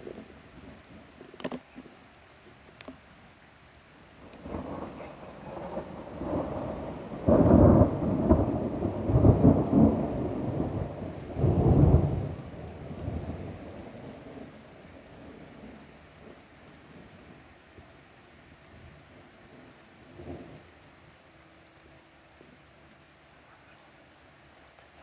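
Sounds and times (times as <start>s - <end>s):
rain: 0.0s - 25.0s
thunder rumbling: 4.1s - 17.9s, 18.6s - 21.2s.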